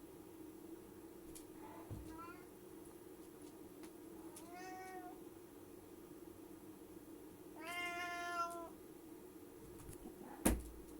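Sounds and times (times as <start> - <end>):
cat meowing: 2.0 - 2.5, 4.3 - 5.2, 7.6 - 8.7.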